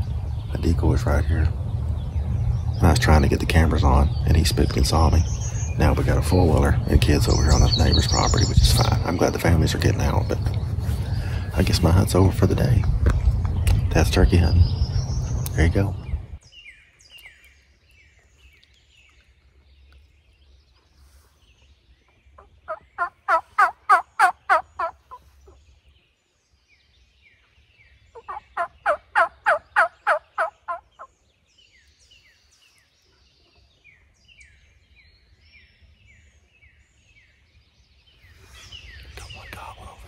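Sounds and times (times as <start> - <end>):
turkey gobbles: 22.4 - 25.6, 28.2 - 31.1.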